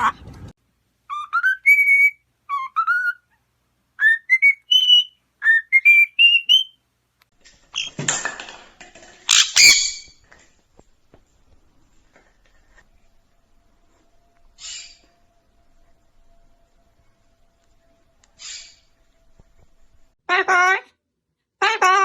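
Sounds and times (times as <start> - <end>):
bird whistling upward notes: 1.1 - 3.2, 4.0 - 6.8, 14.5 - 15.3, 17.7 - 19.0
harsh raspy bird calls: 9.3 - 10.1, 14.6 - 15.1, 18.4 - 19.0.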